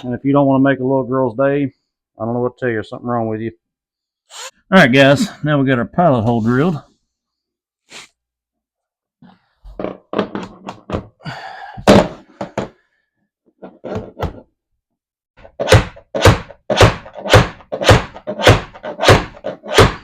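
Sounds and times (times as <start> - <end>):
hammer hitting nail into wood: 15.6 - 20.0.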